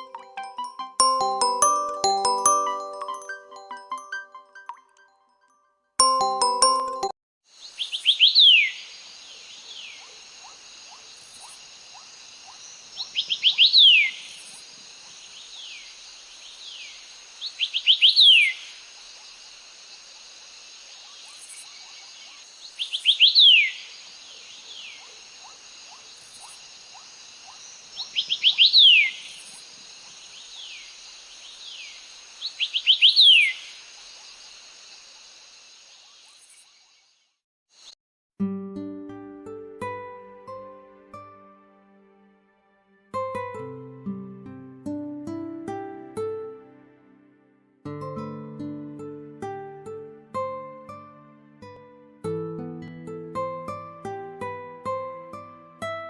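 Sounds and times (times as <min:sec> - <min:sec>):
bird chirping: 0:07.7 - 0:10.2, 0:11.4 - 0:14.6, 0:21.3 - 0:25.6, 0:26.2 - 0:29.7, 0:30.3 - 0:33.8.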